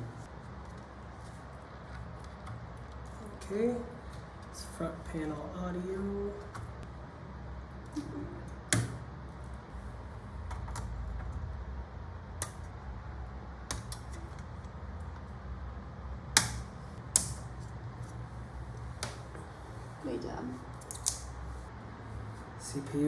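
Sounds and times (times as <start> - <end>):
low hum: 0.0 - 23.0
clicks of connectors being plugged: 16.4 - 17.5.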